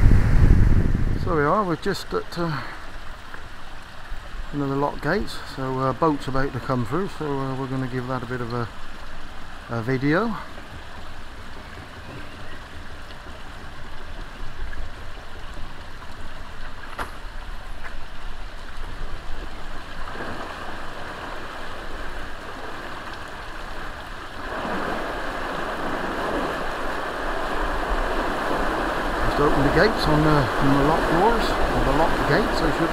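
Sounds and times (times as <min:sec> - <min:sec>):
low rumble: 0:00.0 - 0:01.3
water rushing through sluices: 0:01.3 - 0:32.9.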